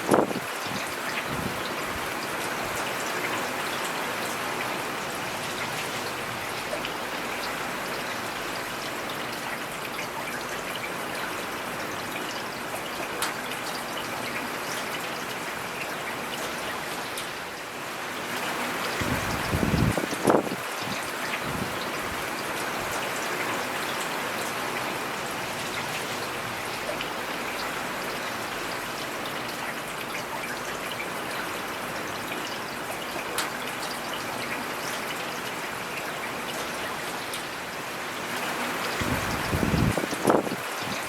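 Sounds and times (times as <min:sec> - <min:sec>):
steady rain in forest: 0:00.0 - 0:41.0.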